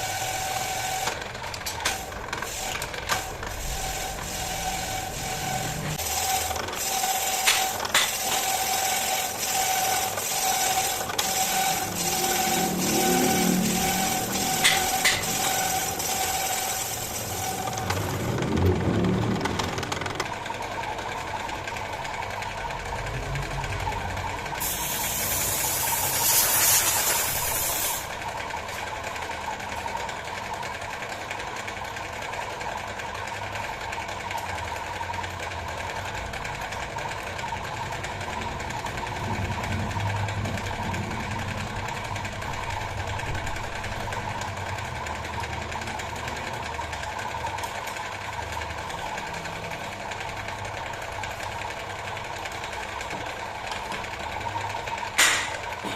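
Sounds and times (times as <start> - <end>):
lathe running: 0.0 - 31.8.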